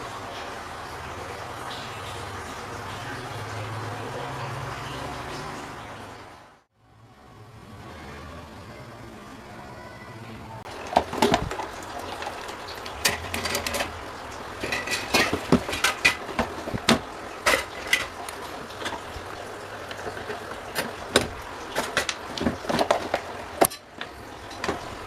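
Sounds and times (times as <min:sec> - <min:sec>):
hand tools clicking and knocking: 0:10.7 - 0:25.0.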